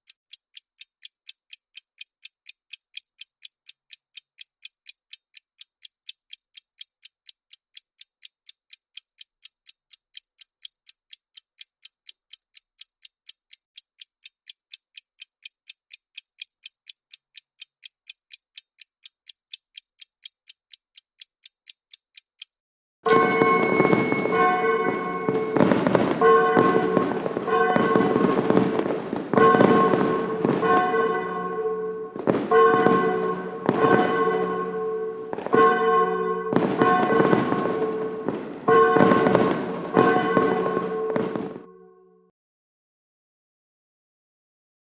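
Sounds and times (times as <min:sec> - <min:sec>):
high clock ticking: 0:00.0 - 0:41.6
sustained chiming tones: 0:23.1 - 0:41.2
ringing bell-like alert: 0:23.1 - 0:42.0
fireworks crackling bursts: 0:24.2 - 0:31.3, 0:32.2 - 0:34.2, 0:36.5 - 0:41.6.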